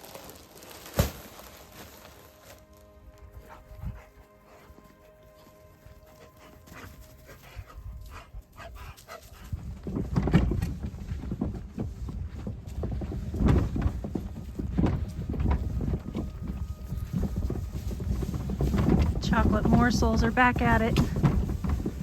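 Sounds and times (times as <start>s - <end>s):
dog panting: 3.3s - 10.4s
low rumble: 9.4s - 22.0s.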